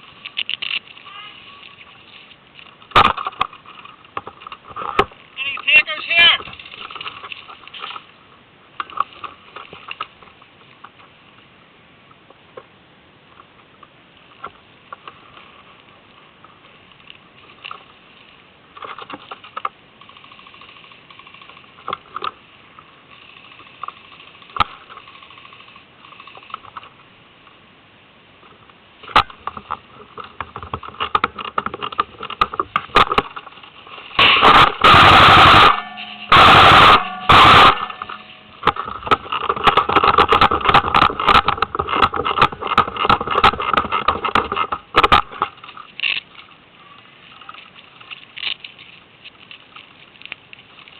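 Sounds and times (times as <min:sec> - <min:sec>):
airsoft guns firing: 0:34.2 - 0:38.2.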